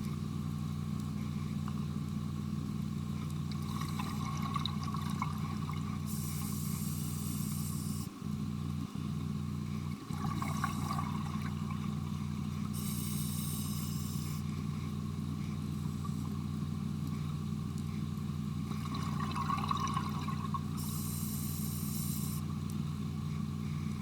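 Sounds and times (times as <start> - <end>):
exhaled bubbles underwater: 3.5 - 6.7, 9.9 - 12.8, 18.6 - 20.8.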